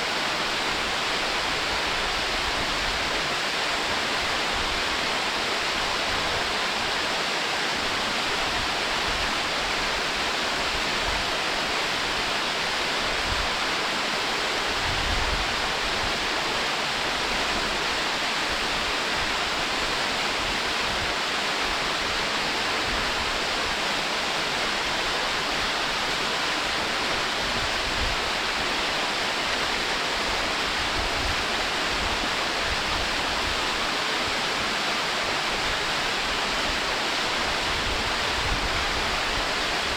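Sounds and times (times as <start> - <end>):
waterfall rushing: 0.0 - 39.9.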